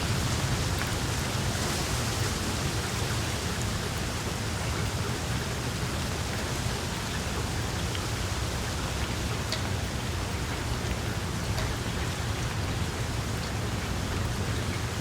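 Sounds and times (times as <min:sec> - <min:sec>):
low wind rumble: 0:00.0 - 0:15.0
rain hissing: 0:00.0 - 0:15.0.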